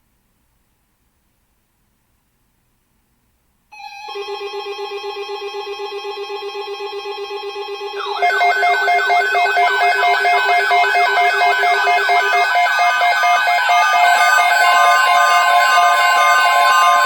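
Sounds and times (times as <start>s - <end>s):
rapidly pulsing alarm tone: 3.9s - 17.0s
fast warbling siren tone: 7.8s - 17.0s.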